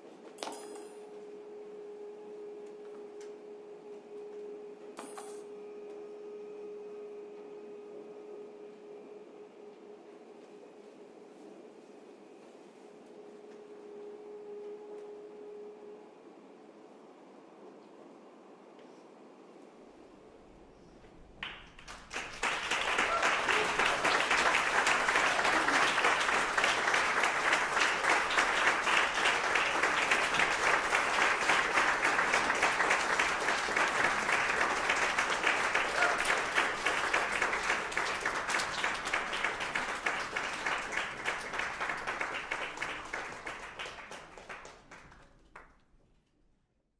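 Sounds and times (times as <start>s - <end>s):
audience applauding: 21.4s - 45.8s.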